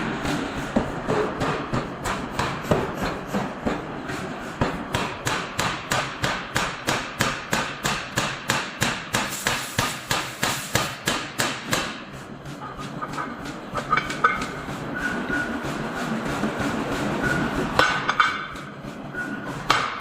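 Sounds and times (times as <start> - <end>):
hammer blows on hot iron: 4.6 - 12.1.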